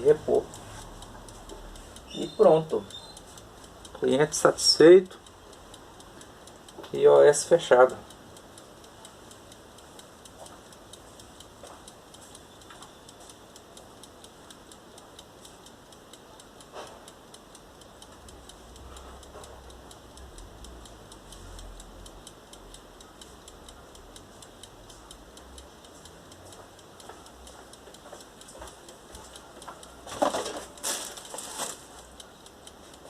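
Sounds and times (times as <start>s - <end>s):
faint quick ticking: 0.0s - 33.0s.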